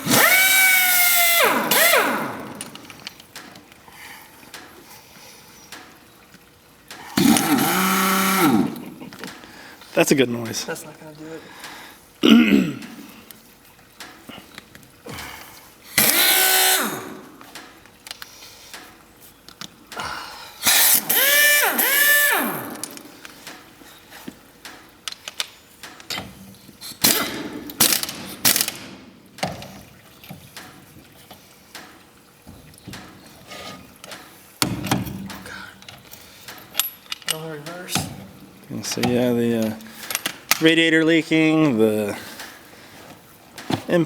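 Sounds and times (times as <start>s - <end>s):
impact wrench whining: 0.0s - 3.0s, 7.2s - 9.0s, 16.0s - 17.4s, 20.6s - 23.2s, 27.0s - 29.0s
tool handling clicks and clanks: 16.0s - 18.9s, 20.6s - 30.8s, 32.8s - 40.7s.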